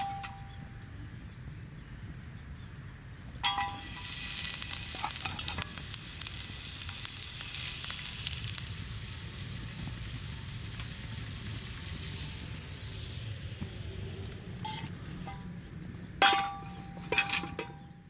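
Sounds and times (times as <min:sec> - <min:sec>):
food sizzling in a pan: 0:03.4 - 0:13.9
metal clanking on metal: 0:16.2 - 0:18.0.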